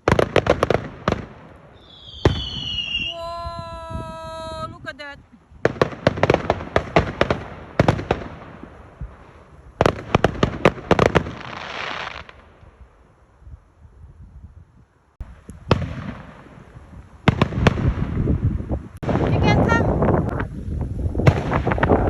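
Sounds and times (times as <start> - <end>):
crackling hiss: 0.0 - 3.4, 5.2 - 19.3
fireworks bangs and crackles: 0.0 - 12.9, 15.2 - 22.0.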